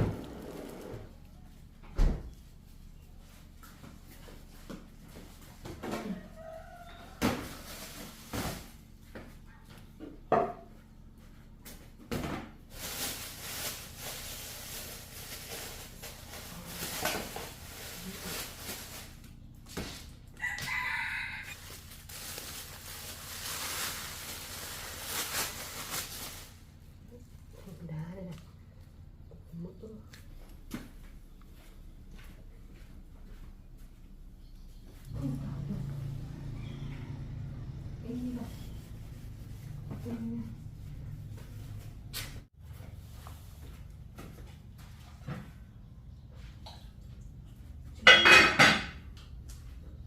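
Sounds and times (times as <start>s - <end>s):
rooster crowing: 5.9s - 8.0s, 20.3s - 21.9s, 35.2s - 37.9s.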